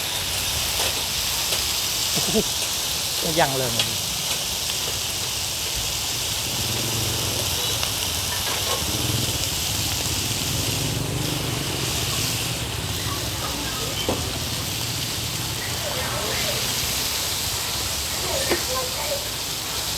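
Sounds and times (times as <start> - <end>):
food sizzling in oil: 0.0 - 19.9.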